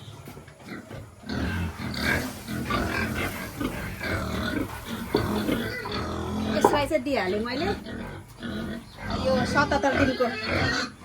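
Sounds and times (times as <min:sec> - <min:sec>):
pigs grunting: 0:00.0 - 0:11.0.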